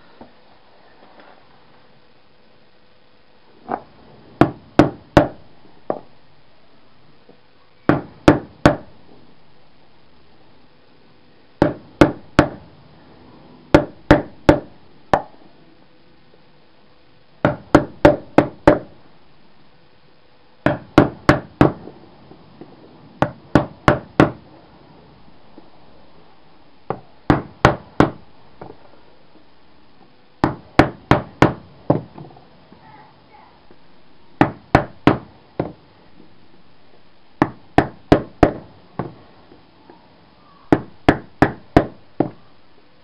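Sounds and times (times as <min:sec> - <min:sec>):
hammer knocking on metal conduit: 0:04.4 - 0:06.0, 0:07.9 - 0:08.9, 0:11.6 - 0:12.6, 0:13.7 - 0:14.7, 0:17.4 - 0:18.9, 0:20.7 - 0:21.8, 0:23.2 - 0:24.4, 0:26.9 - 0:28.2, 0:30.4 - 0:32.2, 0:34.4 - 0:35.8, 0:37.4 - 0:39.2, 0:40.7 - 0:42.4.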